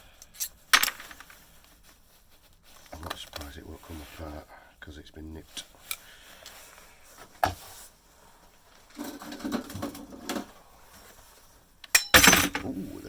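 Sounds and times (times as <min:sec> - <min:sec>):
metal parts rattling: 0:00.3 - 0:01.4, 0:11.9 - 0:12.7.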